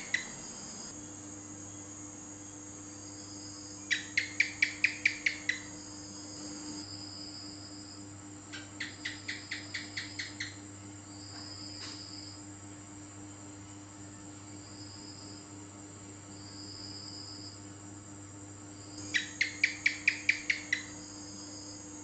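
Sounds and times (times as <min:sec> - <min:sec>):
gecko chirping: 0:00.0 - 0:00.6, 0:03.9 - 0:05.7, 0:08.6 - 0:10.6, 0:19.0 - 0:21.0.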